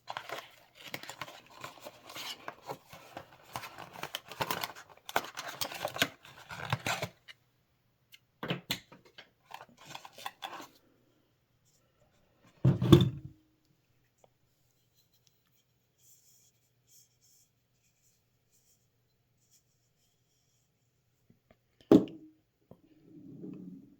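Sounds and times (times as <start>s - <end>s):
packaging scratchy clicks and rustles: 0.0s - 7.4s, 9.5s - 10.7s.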